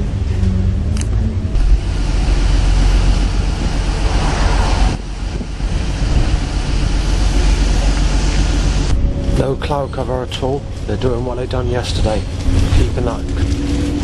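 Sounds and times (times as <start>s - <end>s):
vehicle passing with tyre noise: 0.0s - 8.9s, 12.0s - 14.0s
road traffic: 0.0s - 14.0s
wind rumbling on microphone: 0.0s - 14.0s.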